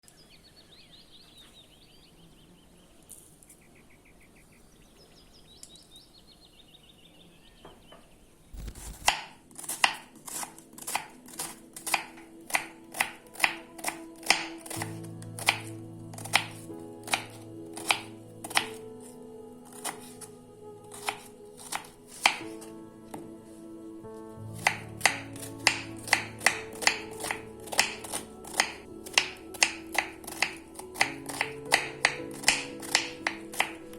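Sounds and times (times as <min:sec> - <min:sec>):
sustained low musical tones: 0:10.1 - 0:33.9.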